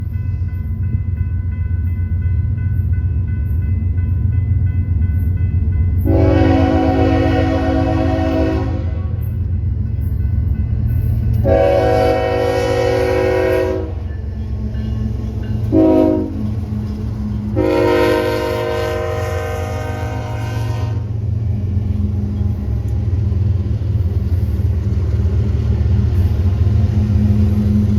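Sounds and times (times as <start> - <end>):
locomotive air horn blasts: 6.0 - 9.2, 11.4 - 14.1, 15.7 - 16.5, 17.5 - 21.2.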